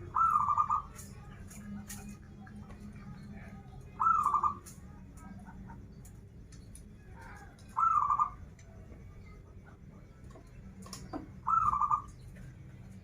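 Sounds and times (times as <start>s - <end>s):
dove cooing: 0.0s - 1.2s, 3.8s - 5.8s, 7.0s - 8.5s, 11.3s - 12.5s.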